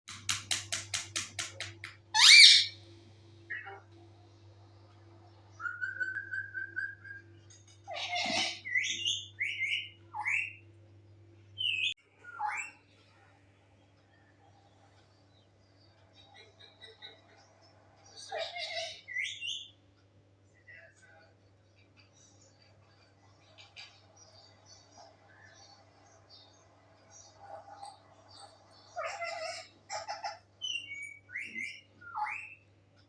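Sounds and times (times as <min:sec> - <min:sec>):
parrot clicking: 0:00.1 - 0:02.0
faint steady hum: 0:01.9 - 0:33.0
parrot squawking: 0:02.1 - 0:02.8, 0:28.8 - 0:32.6
parrot whistling: 0:02.2 - 0:02.8.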